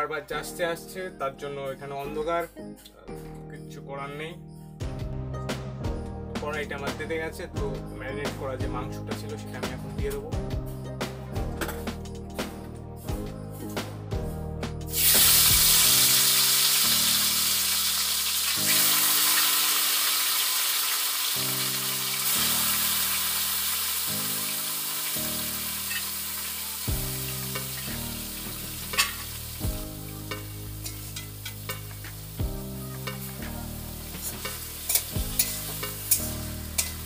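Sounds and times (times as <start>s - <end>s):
meat sizzling in hot oil: 14.9s - 37.0s.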